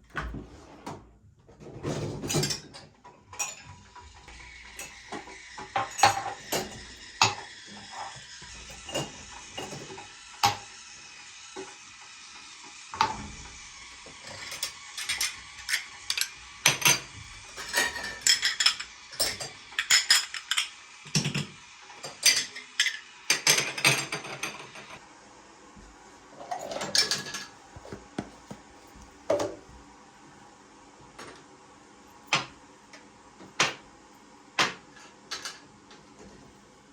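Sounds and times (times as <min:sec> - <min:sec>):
dishes and utensils clinking: 0:02.1 - 0:03.8, 0:04.8 - 0:10.0, 0:14.4 - 0:25.0, 0:26.4 - 0:28.6.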